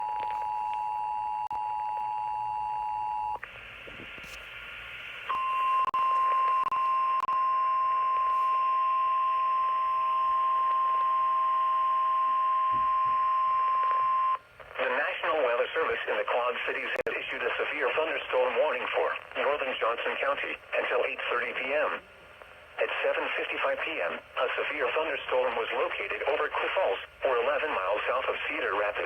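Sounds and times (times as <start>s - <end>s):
radio hiss: 3.4s - 7.0s, 14.6s - 29.0s.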